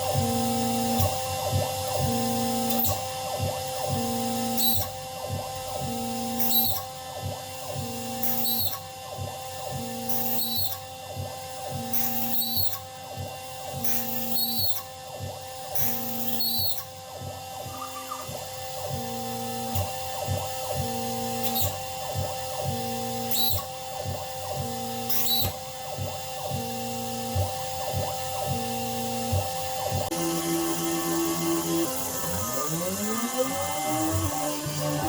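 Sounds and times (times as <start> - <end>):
small motorized machine humming: 0.0 - 35.0
rising and falling whir: 30.1 - 35.0.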